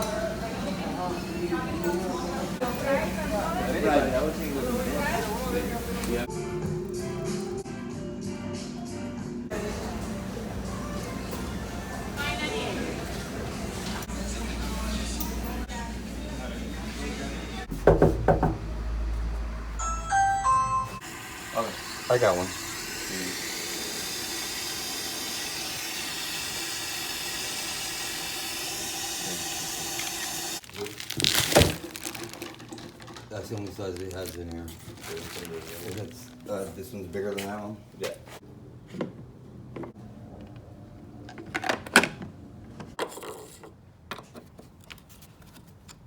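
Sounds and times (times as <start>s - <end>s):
water running: 0.0s - 6.3s, 21.0s - 34.5s.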